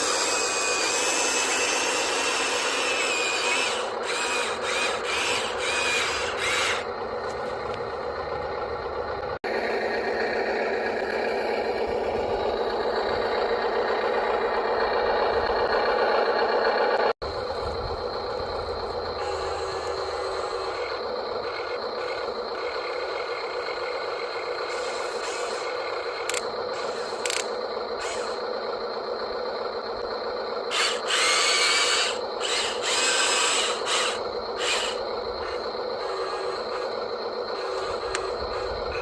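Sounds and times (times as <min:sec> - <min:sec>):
small electric motors whining: 0:00.0 - 0:29.1, 0:30.6 - 0:39.0
sharp clicks: 0:27.1 - 0:27.5.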